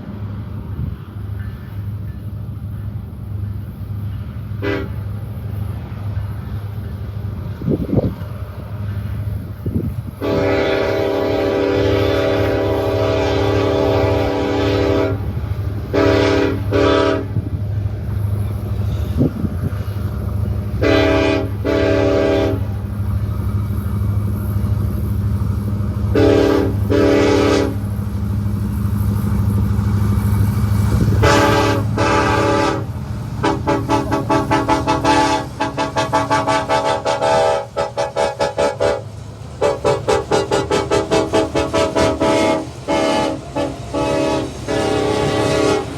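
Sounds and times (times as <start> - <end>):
train rumbling: 0.0 - 45.9
locomotive air horn: 4.6 - 5.1, 10.2 - 17.5, 20.8 - 22.9, 26.1 - 27.8, 31.0 - 45.9
short pulsing horn chords: 31.2 - 45.9.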